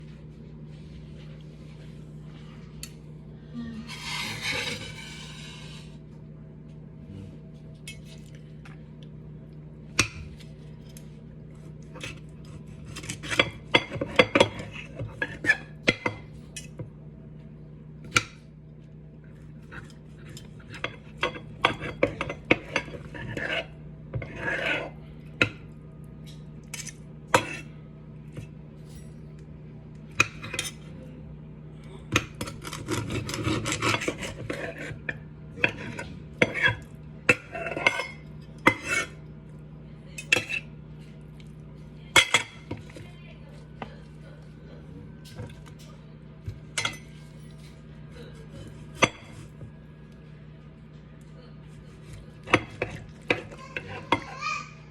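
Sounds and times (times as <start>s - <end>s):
steady low hum: 0.0s - 54.9s
utensils and dishes clattering: 46.6s - 49.6s, 52.4s - 54.4s.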